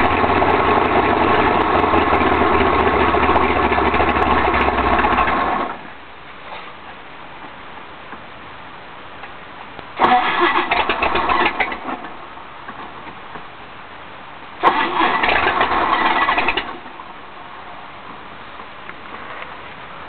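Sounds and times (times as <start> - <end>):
boat engine firing in bursts: 0.0 - 5.9, 10.0 - 12.2, 14.6 - 17.1.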